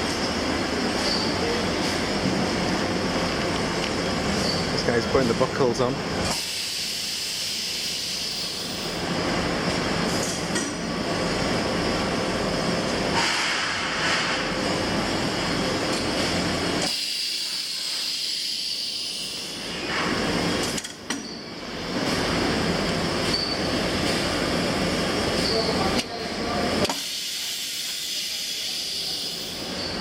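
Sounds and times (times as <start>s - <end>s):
factory machinery hiss: 4.4s - 10.2s, 13.0s - 20.6s, 26.5s - 30.0s.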